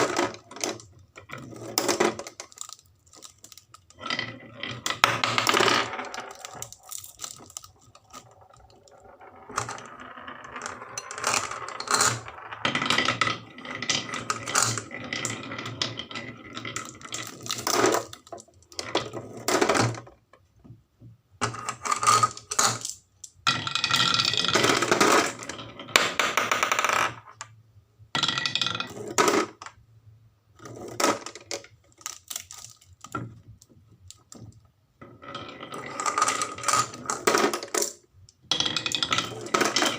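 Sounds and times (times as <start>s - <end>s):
marbles rattling down wooden run: 0.0s - 20.1s, 21.4s - 27.3s, 34.1s - 39.9s.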